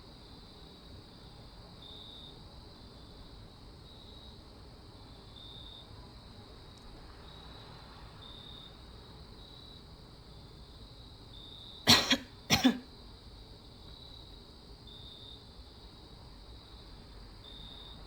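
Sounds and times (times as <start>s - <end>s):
crickets trilling: 0.0s - 18.0s
person coughing: 11.9s - 12.8s.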